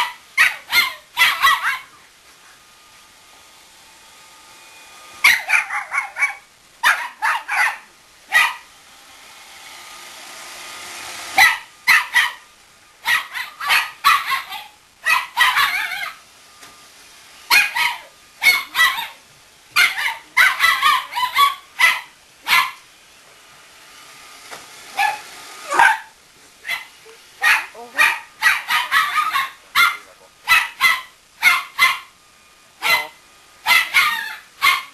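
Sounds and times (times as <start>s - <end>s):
small dog yapping: 0.0s - 2.0s, 5.2s - 8.7s, 11.4s - 12.4s, 13.0s - 16.2s, 17.5s - 19.2s, 19.8s - 22.8s, 24.9s - 32.1s, 32.8s - 34.9s
robot vacuum whirring: 0.0s - 34.9s.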